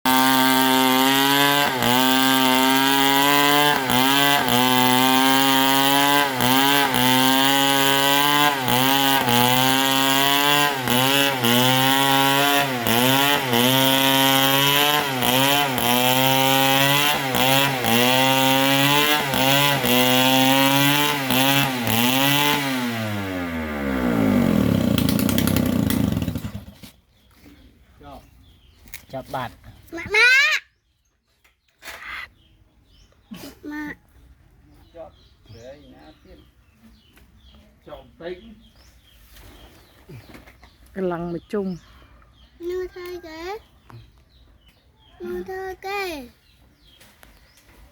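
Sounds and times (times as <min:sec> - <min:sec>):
chainsaw cutting wood: 0:00.1 - 0:27.0.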